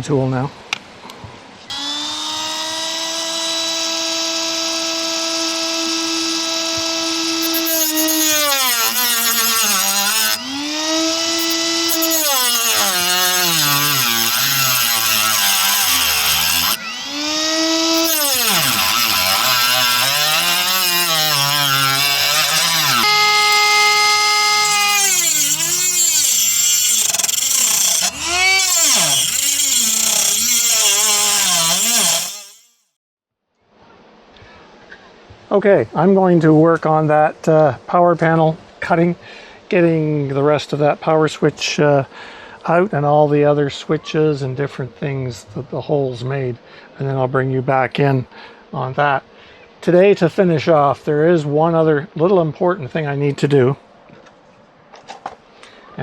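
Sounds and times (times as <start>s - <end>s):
cutting disc cutting metal sheet: 1.7s - 32.8s
rotary tool whining: 1.7s - 32.8s.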